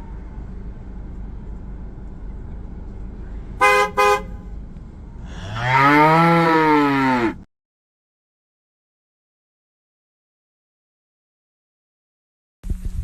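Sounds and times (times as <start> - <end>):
car horn toots: 3.6 - 4.6
cow mooing: 5.3 - 7.5.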